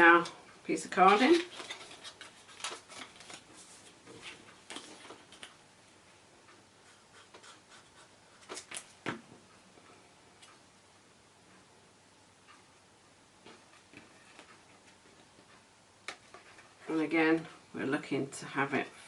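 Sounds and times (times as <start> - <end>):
card stock rustling and tapping: 1.0 - 5.6, 8.4 - 9.4, 13.4 - 17.5.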